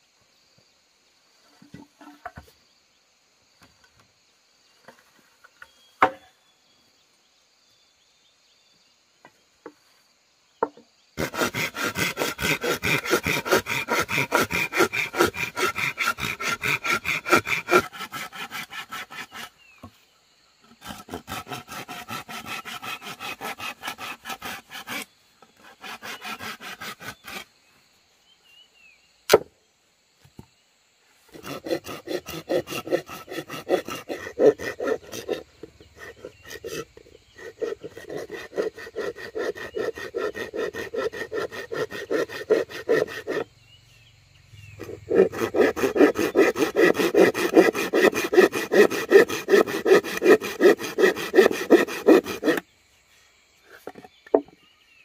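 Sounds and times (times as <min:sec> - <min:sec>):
hand tool rubbing on wood: 0:11.2 - 0:19.6, 0:20.8 - 0:27.5, 0:31.4 - 0:43.5, 0:44.8 - 0:52.6.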